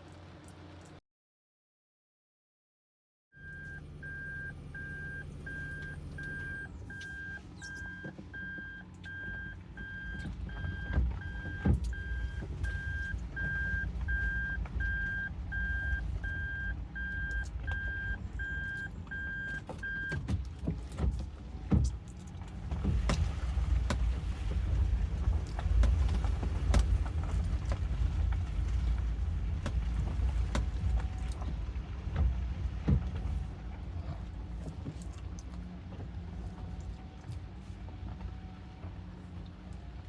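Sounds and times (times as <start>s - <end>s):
car warning beeper beeping: 3.4s - 20.3s
low vehicle rumble: 3.4s - 40.0s.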